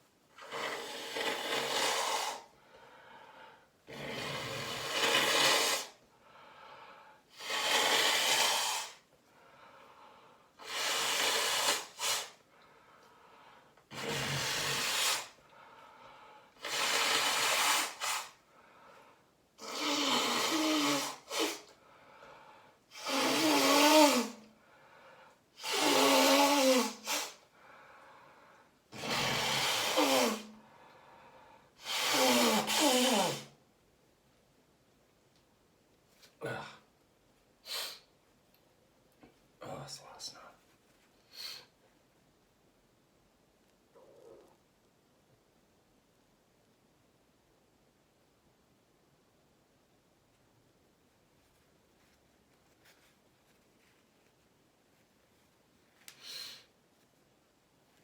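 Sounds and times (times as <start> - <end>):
quiet breaths: 0.0 - 7.9, 8.8 - 23.1, 24.2 - 25.9, 26.5 - 31.9, 39.3 - 42.0, 51.3 - 57.2
person blowing nose: 0.4 - 2.5, 3.9 - 6.0, 7.3 - 9.1, 10.6 - 12.4, 13.9 - 15.4, 16.6 - 18.4, 19.6 - 21.8, 22.9 - 24.5, 25.6 - 27.4, 28.9 - 30.6, 31.8 - 33.6, 37.6 - 38.1, 41.3 - 41.7, 56.1 - 56.8.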